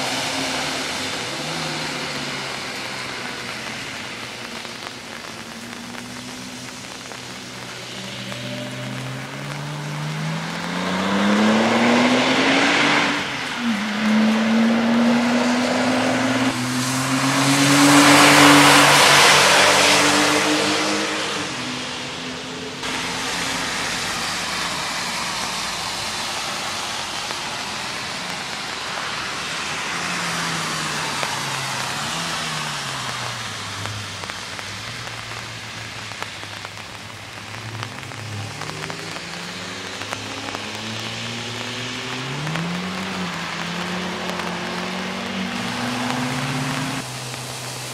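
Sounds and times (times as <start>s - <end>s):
hiss of wet tyres: 0.0s - 47.9s
race car accelerating past: 8.2s - 22.1s.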